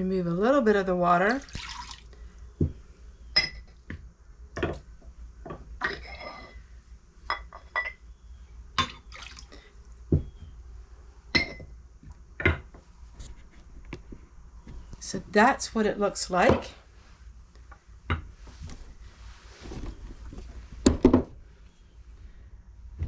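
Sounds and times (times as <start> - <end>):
water splashing: 1.2 - 2.1, 9.1 - 9.6
water dripping: 1.2 - 2.2, 8.8 - 9.7.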